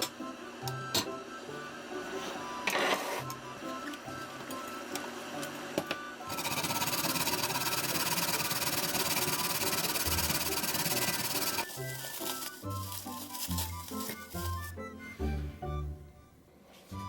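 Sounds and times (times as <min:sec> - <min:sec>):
quiet background music: 0:00.0 - 0:17.0
small electric motor running: 0:06.3 - 0:12.6.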